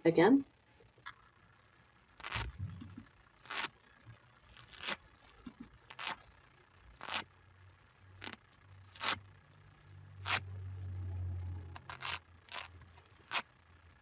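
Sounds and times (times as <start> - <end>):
velcro ripping apart: 2.2 - 2.6, 3.4 - 3.8, 4.5 - 6.3, 6.9 - 7.3, 8.2 - 9.2, 10.2 - 10.4, 11.7 - 13.5.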